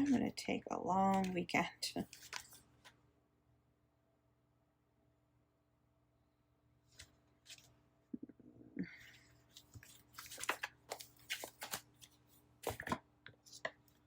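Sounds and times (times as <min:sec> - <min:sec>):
paper rustling and crinkling: 0:02.0 - 0:03.0, 0:06.9 - 0:07.8, 0:09.1 - 0:14.0.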